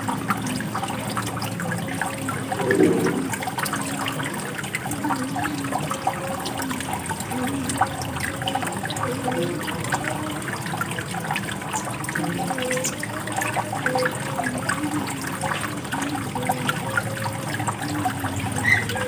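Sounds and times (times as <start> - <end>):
running water splashing: 0.0 - 19.0.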